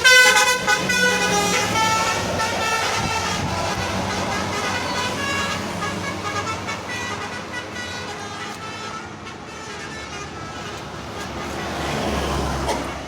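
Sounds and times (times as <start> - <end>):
multi-tone musical horn tune: 0.0 - 11.9
traffic: 0.0 - 13.0.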